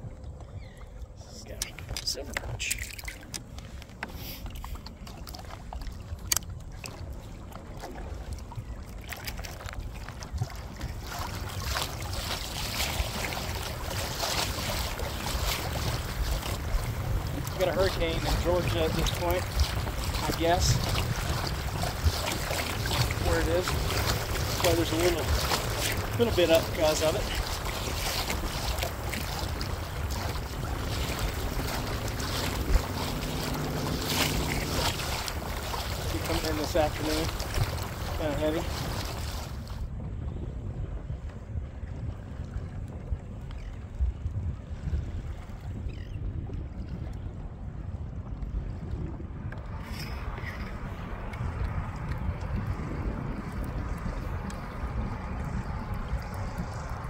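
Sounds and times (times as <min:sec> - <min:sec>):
water lapping against kayak hull: 0:00.0 - 0:57.0
wind buffeting microphone: 0:04.6 - 0:57.0.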